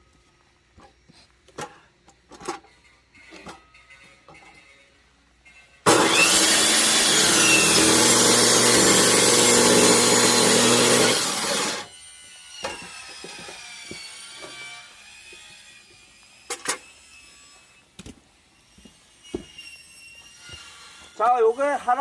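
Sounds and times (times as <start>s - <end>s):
power saw cutting log: 5.9s - 11.9s.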